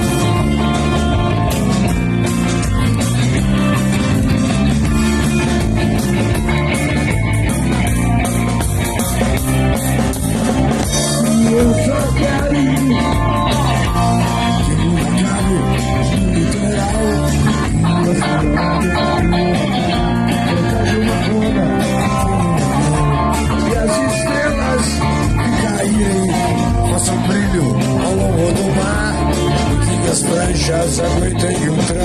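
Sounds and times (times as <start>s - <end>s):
bass guitar: 0.0s - 32.0s
drum kit: 0.0s - 32.0s
electric guitar: 0.0s - 32.0s.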